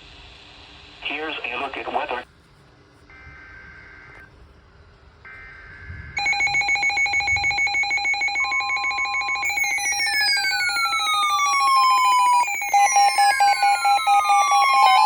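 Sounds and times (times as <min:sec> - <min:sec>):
rapidly pulsing electronic alert: 0:06.2 - 0:15.0.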